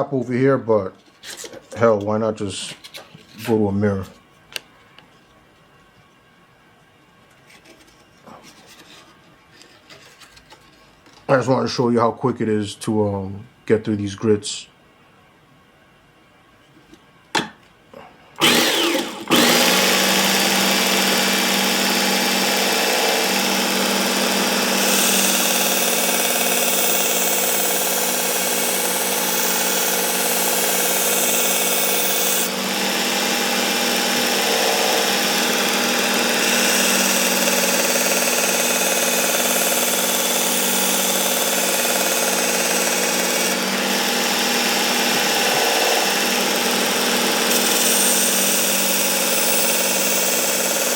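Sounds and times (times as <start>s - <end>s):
belt sharpener motor whine: 18.4s - 50.9s
blade grinding on belt: 18.4s - 50.9s.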